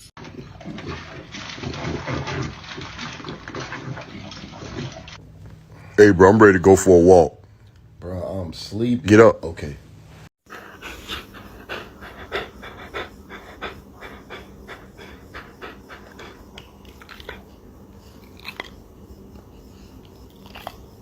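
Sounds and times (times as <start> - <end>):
dog panting: 10.4 - 21.0.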